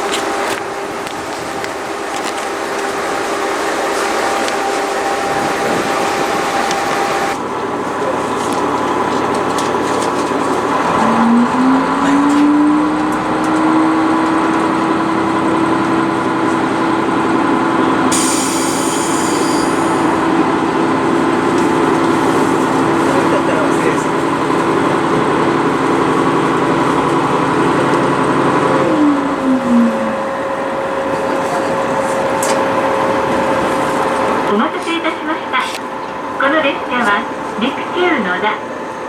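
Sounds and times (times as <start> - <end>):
diesel railcar rumble: 0.0 - 39.0
engine tone rising: 10.7 - 17.6, 26.0 - 34.5.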